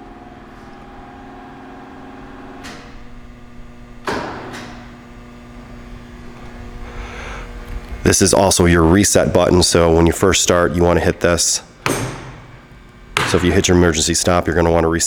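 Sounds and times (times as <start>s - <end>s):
lower steady hum: 0.0s - 15.0s
motorized table lift humming: 0.0s - 15.0s
loud clunk: 4.0s - 4.9s, 11.8s - 12.6s.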